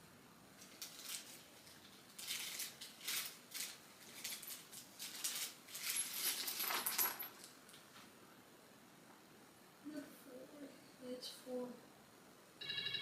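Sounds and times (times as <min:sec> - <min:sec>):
small hard items clicking and rattling: 0:00.6 - 0:07.5.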